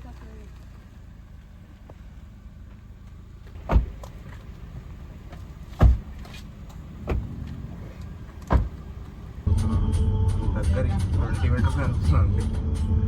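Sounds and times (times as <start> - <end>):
low steady rumble: 0.0 - 13.0
car doors shutting: 3.4 - 9.4.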